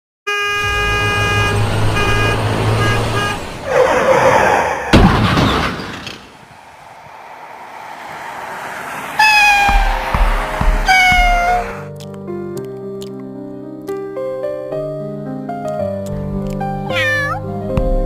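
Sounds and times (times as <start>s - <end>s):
horn-like tone blasts: 0.3s - 3.6s, 9.2s - 11.8s
sharp crash: 4.9s - 11.0s
rushing whoosh: 6.2s - 11.9s.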